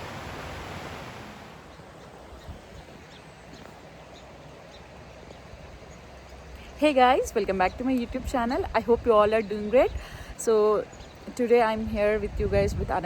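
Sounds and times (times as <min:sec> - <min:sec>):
steady outdoor hiss: 0:00.0 - 0:13.0
small birds chirping: 0:01.6 - 0:13.0.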